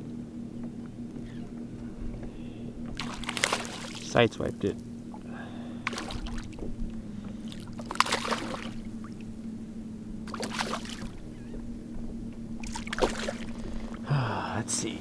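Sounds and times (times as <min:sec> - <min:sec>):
steady low hum: 0:00.0 - 0:15.0
paddle splashing in water: 0:02.9 - 0:04.1, 0:05.7 - 0:09.3, 0:10.2 - 0:11.2, 0:12.6 - 0:14.0.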